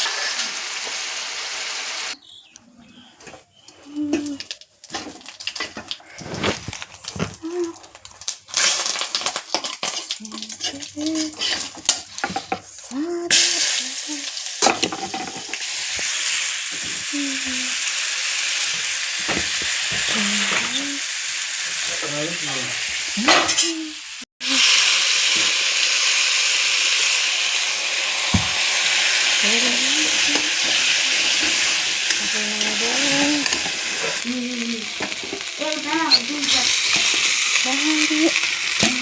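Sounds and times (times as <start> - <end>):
food sizzling in frying pan: 0.0 - 2.4, 3.6 - 39.0
stirring scrapes: 10.6 - 12.5.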